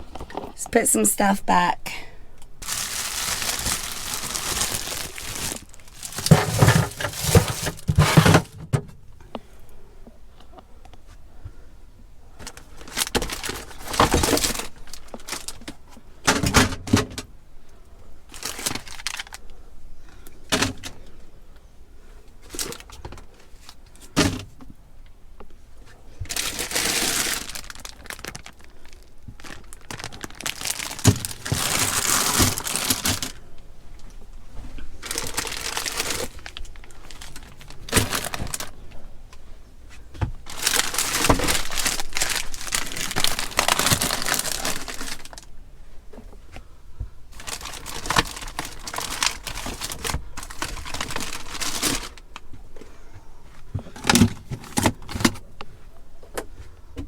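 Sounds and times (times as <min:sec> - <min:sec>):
plastic packaging crinkling: 0:02.6 - 0:08.6, 0:12.6 - 0:15.8, 0:18.3 - 0:19.4, 0:26.3 - 0:33.4, 0:35.0 - 0:38.8, 0:40.4 - 0:45.5, 0:47.3 - 0:52.4
items knocking onto shelves: 0:02.6 - 0:09.0.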